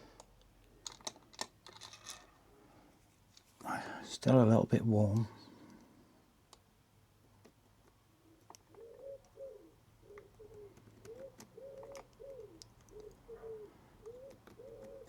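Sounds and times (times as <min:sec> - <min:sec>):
pigeon cooing: 0:08.2 - 0:15.0.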